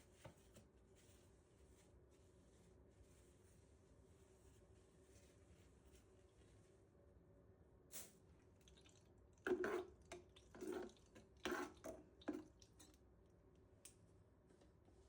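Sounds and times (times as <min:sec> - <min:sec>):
faint wet handling sounds: 0:08.0 - 0:15.0.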